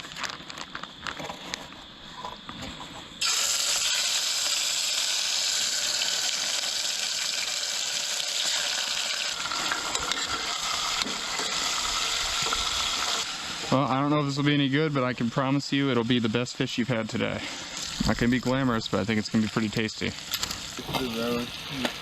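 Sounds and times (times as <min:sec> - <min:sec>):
fish sizzling in a pan: 0:03.2 - 0:15.0, 0:17.6 - 0:22.0.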